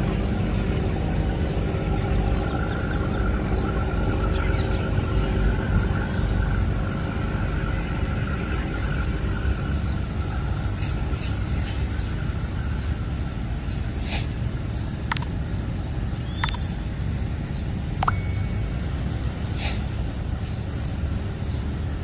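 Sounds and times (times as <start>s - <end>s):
boat diesel engines rumbling: 0.0s - 22.0s
short sharp clicks: 15.1s - 15.4s, 16.4s - 16.7s.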